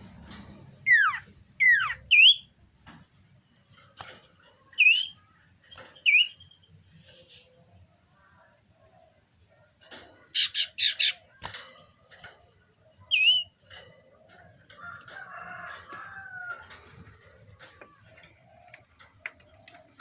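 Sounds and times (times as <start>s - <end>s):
bird chirping: 0.8s - 2.6s, 4.7s - 8.5s, 10.2s - 11.5s, 12.6s - 16.5s
rooster crowing: 14.7s - 16.8s.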